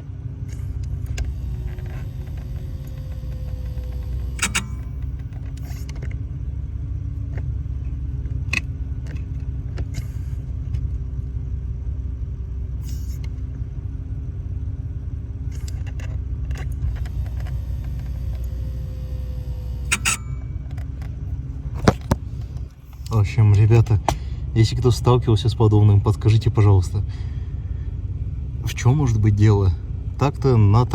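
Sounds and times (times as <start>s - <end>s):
car engine idling: 0.0s - 30.9s
brake pedal squeaky creaks: 0.5s - 6.3s, 8.6s - 10.9s, 15.6s - 23.7s.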